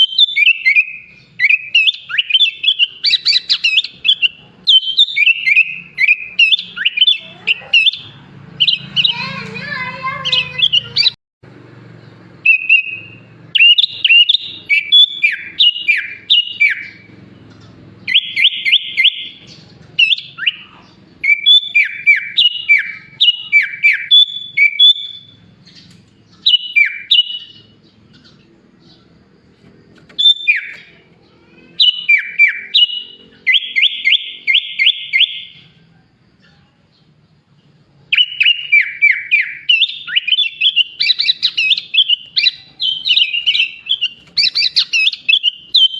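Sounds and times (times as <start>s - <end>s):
bird whistled song: 0.0s - 11.2s, 12.3s - 35.8s, 36.4s - 45.9s
bird rattling trill: 29.9s - 31.0s, 40.0s - 45.9s.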